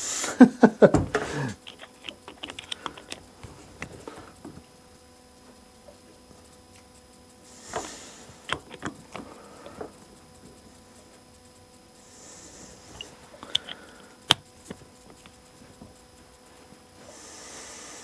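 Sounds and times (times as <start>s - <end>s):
screwdriver clicking and tapping: 1.6s - 3.2s, 8.5s - 9.2s, 13.4s - 15.4s
small metal parts handled: 1.6s - 3.3s.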